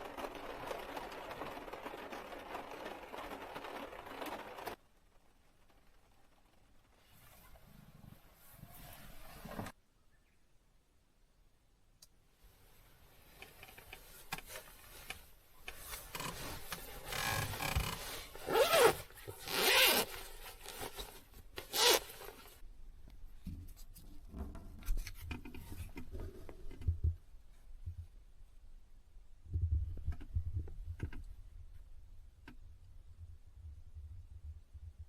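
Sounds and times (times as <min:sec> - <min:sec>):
rustling: 0:00.0 - 0:09.8, 0:12.4 - 0:28.3
rubbing and scraping handling: 0:12.8 - 0:22.6
zipper-like scraping strokes: 0:15.8 - 0:22.6.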